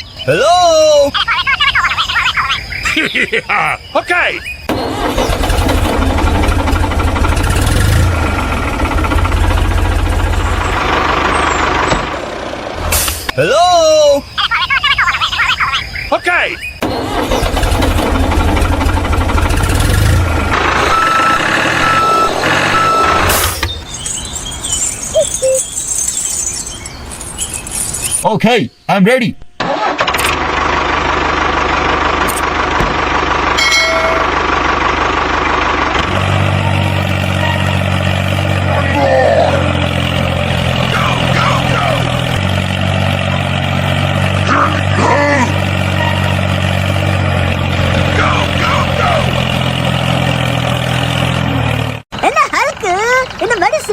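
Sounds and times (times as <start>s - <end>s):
tractor engine chugging: 4.6s - 13.0s, 16.8s - 26.7s, 29.7s - 53.9s
high squeaky glides: 20.7s - 28.2s, 36.5s - 38.7s, 45.6s - 48.0s
short reversing alarm beeps: 20.8s - 26.5s.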